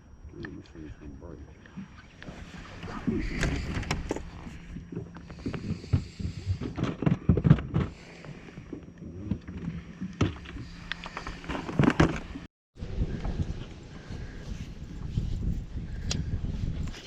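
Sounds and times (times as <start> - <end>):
low hum: 0.0 - 17.0
knocks and bumps on a boat: 2.7 - 12.4.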